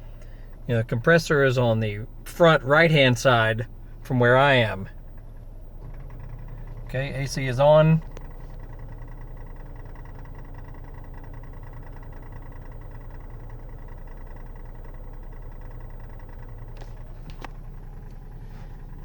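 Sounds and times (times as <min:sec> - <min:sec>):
car engine idling hum: 0:00.0 - 0:19.0
faint tick-rattle from dashboard: 0:00.0 - 0:19.0
sharp clicks: 0:08.1 - 0:08.4.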